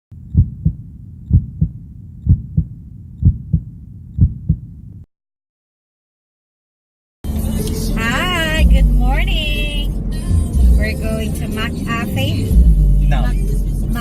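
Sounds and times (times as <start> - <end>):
heartbeat double thumps: 0.2 - 4.8, 8.4 - 11.7, 12.3 - 14.0.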